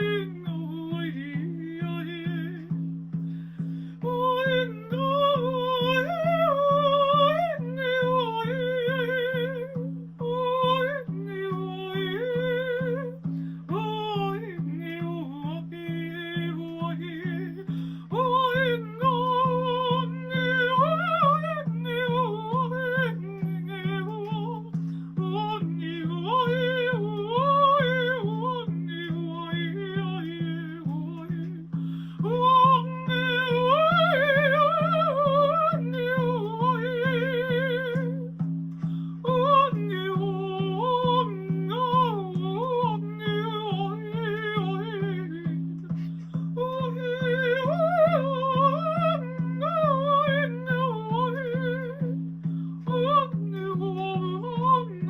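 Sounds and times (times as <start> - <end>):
woman singing wordless vocals: 0.0 - 55.0.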